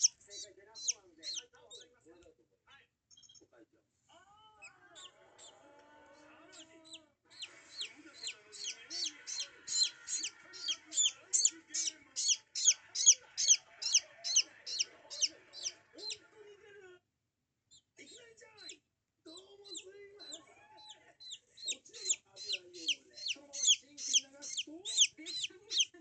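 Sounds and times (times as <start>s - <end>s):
chick peeping: 0.0s - 1.8s, 6.6s - 16.2s, 19.4s - 26.0s.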